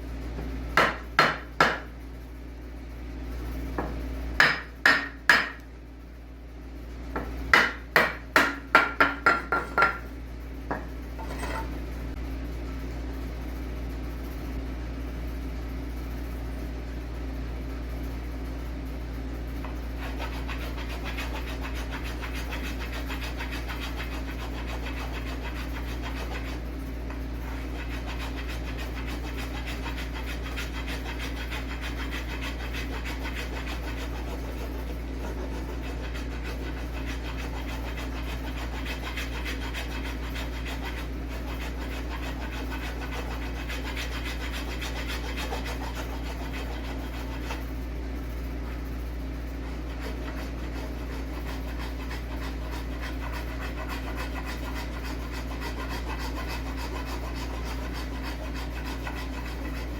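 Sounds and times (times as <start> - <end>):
wood rasp scraping wood: 0.8 - 1.9, 4.4 - 5.6, 7.5 - 10.0, 19.7 - 47.7, 49.6 - 59.9.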